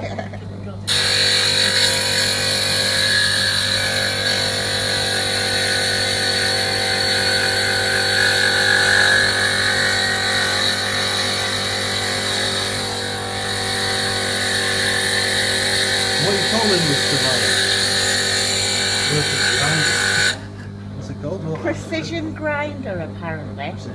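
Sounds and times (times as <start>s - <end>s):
glass grinder grinding glass: 0.9s - 20.5s.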